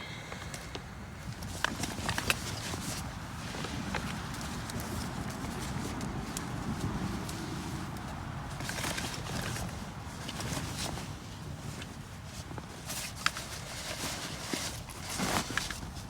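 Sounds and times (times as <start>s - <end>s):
steady low rumble: 0.0s - 4.3s
camping gear rustling: 1.2s - 16.0s.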